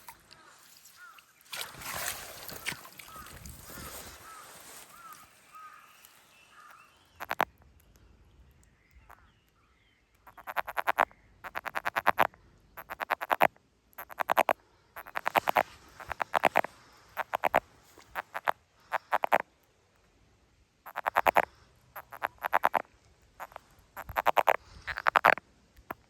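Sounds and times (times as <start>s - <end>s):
frog calling in clicking pulses: 6.6s - 7.6s, 10.2s - 19.5s, 20.9s - 26.0s.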